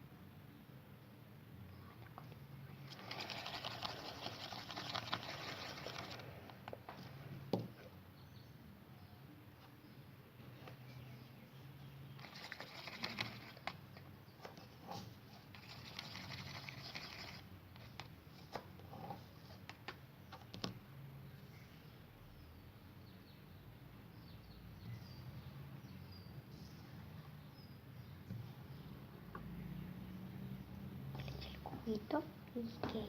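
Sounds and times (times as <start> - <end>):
rustling and scraping: 12.2 - 20.5.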